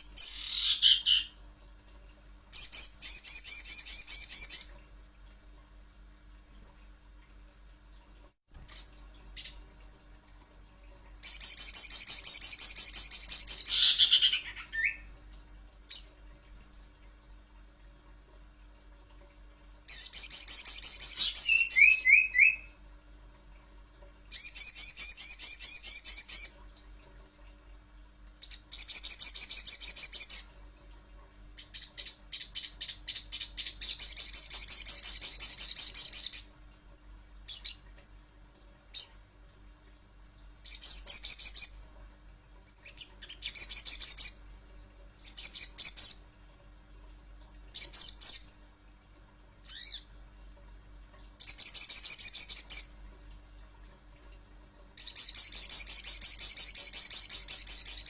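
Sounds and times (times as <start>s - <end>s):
bird chirps: 0.0s - 1.3s, 11.2s - 15.1s, 19.9s - 22.7s
bird twittering trills: 0.0s - 1.4s, 2.5s - 4.7s, 11.2s - 15.1s, 19.9s - 22.7s, 31.7s - 36.5s, 49.7s - 50.1s, 55.0s - 58.0s.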